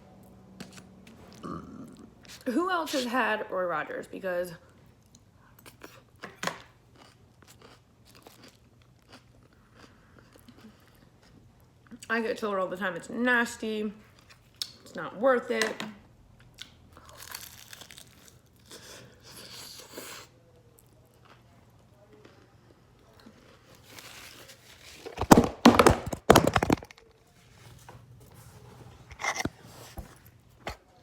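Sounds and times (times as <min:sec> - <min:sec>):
food crunching: 0:06.9 - 0:11.4, 0:16.5 - 0:20.2, 0:29.1 - 0:30.2.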